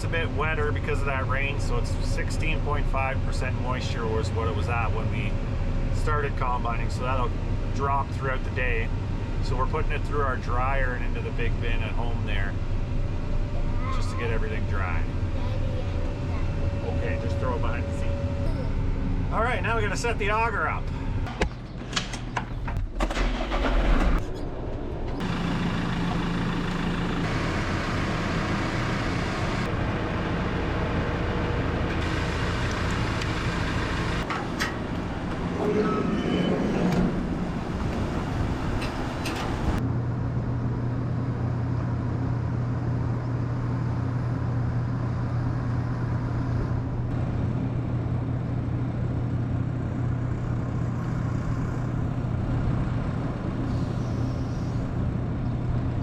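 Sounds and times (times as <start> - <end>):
engine running steadily: 0.0 - 56.0.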